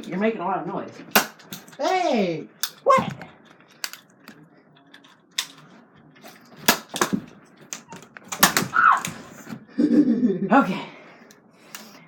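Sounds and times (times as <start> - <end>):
foam dart blasters clacking: 1.1 - 1.8, 6.6 - 9.2.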